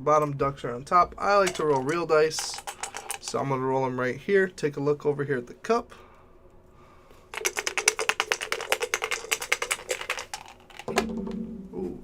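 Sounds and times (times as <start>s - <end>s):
dice rattling on hard surface: 1.4s - 3.4s, 7.3s - 11.2s.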